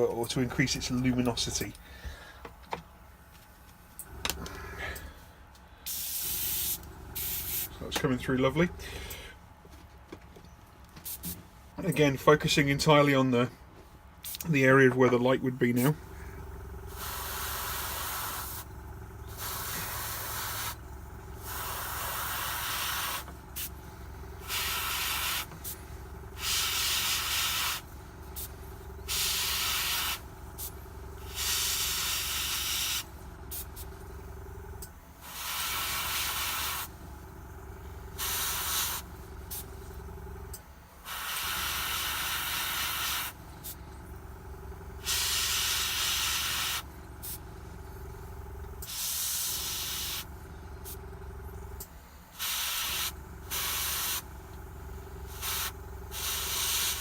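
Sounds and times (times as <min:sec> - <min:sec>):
steady low hum: 0:00.0 - 0:57.0
airbrush spraying hiss: 0:05.9 - 0:07.7, 0:16.9 - 0:18.7, 0:19.3 - 0:20.8, 0:21.4 - 0:23.8, 0:24.4 - 0:25.8, 0:26.4 - 0:27.8, 0:29.1 - 0:30.7, 0:31.3 - 0:33.1, 0:35.2 - 0:36.9, 0:38.2 - 0:39.6, 0:41.1 - 0:43.8, 0:45.0 - 0:47.4, 0:48.8 - 0:50.2, 0:52.4 - 0:54.2, 0:55.3 - 0:57.0.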